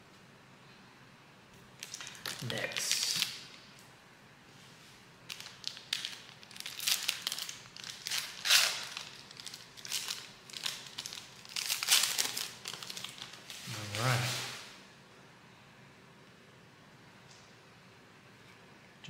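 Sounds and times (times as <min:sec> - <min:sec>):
foil wrapper crinkling: 0:01.8 - 0:03.4, 0:05.3 - 0:14.6.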